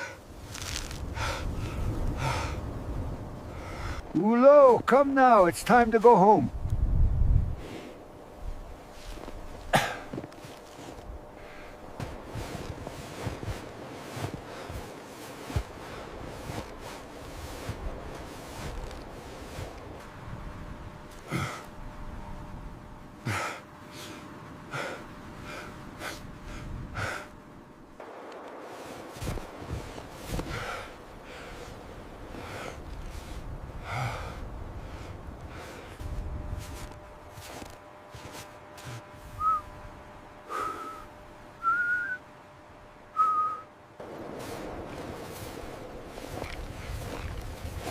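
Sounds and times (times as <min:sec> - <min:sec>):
wind hiss: 0:00.0 - 0:47.9
person whistling short notes: 0:39.4 - 0:39.7, 0:40.5 - 0:42.2, 0:43.2 - 0:43.7.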